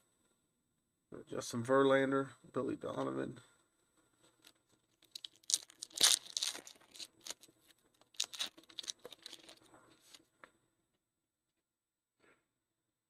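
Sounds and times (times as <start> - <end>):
foil wrapper tearing and crinkling: 5.0 - 10.2.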